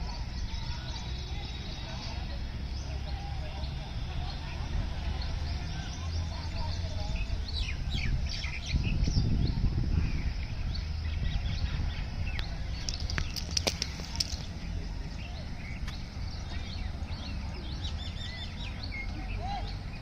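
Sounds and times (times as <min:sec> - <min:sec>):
small birds chirping: 0:00.0 - 0:20.0
sharp clicks: 0:12.4 - 0:14.5.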